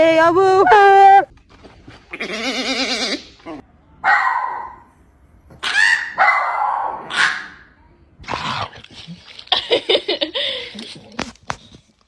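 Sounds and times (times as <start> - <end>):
dog barking drawn-out: 5.6 - 7.6.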